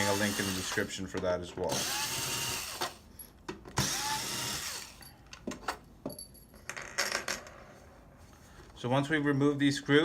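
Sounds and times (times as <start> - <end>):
power screwdriver spinning: 0.0 - 0.9.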